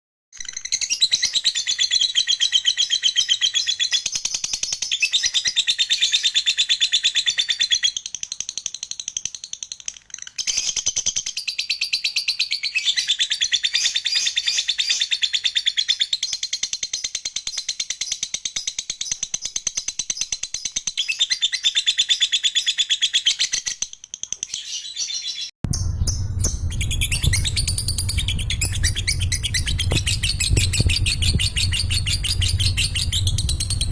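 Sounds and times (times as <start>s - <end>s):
low hum: 25.6s - 33.9s.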